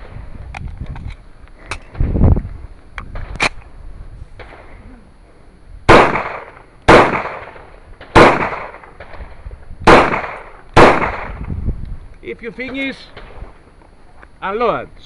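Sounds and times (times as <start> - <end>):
pistol shots: 5.9 - 9.2, 9.8 - 11.4.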